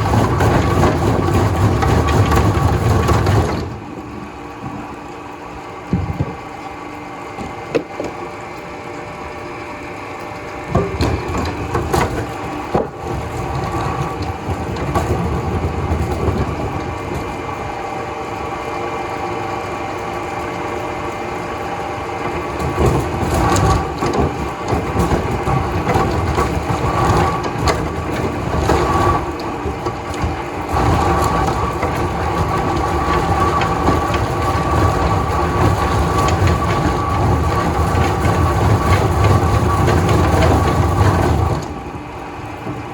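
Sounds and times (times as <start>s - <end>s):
wood cracking and splintering: 0.0s - 4.2s, 10.4s - 17.4s, 22.2s - 41.8s
wood-processing machinery humming: 0.0s - 42.9s.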